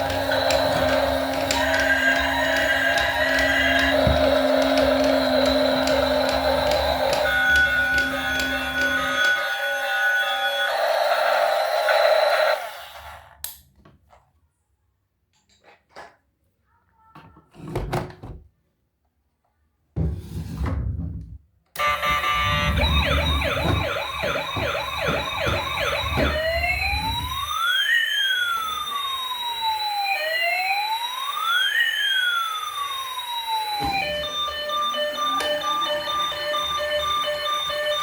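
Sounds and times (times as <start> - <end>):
toy electronic siren: 0.0 - 13.1, 21.8 - 38.0.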